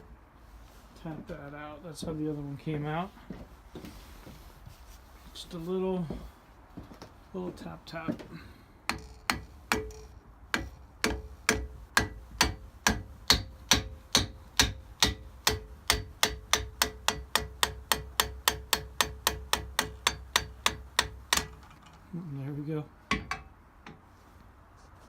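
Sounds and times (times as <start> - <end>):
hammer tapping on screwdriver: 8.9 - 21.6.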